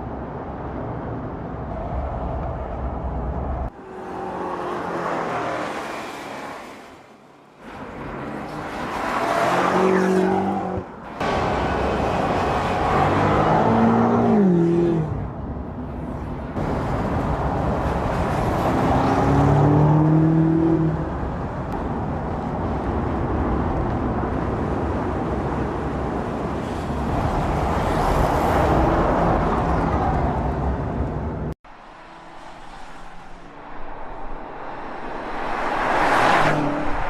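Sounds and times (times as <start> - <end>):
wind and road noise: 0.0 - 37.0.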